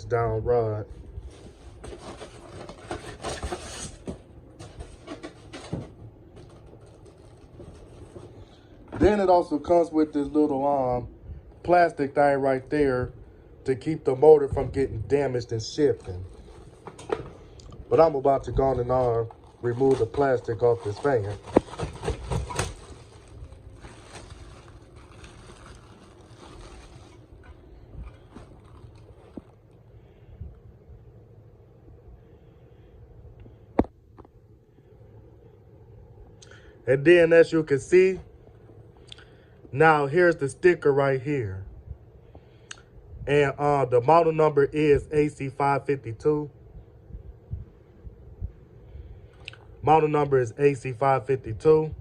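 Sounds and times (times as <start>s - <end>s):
plastic wrapping rustling: 17.9s - 29.7s
packaging crinkling: 18.2s - 29.6s.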